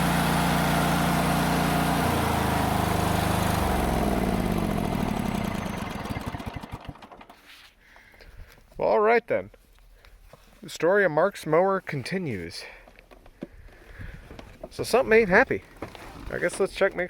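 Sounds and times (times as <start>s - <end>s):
lawn tractor engine running: 0.0s - 7.5s.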